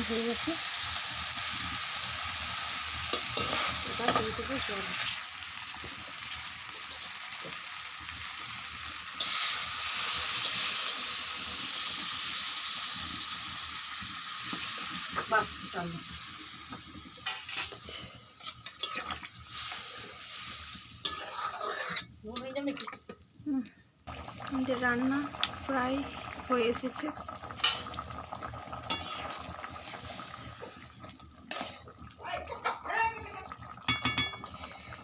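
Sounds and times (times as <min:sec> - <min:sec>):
curry sizzling in a pan: 0:00.0 - 0:35.0
spoon knocking and scraping pan: 0:03.1 - 0:04.4, 0:21.0 - 0:23.2, 0:27.6 - 0:27.9, 0:28.9 - 0:29.4, 0:33.9 - 0:34.5.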